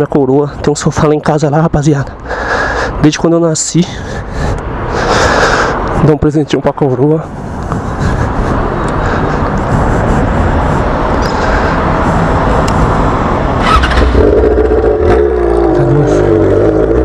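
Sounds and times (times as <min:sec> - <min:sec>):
motorcycle engine loud exhaust: 0:09.6 - 0:17.0.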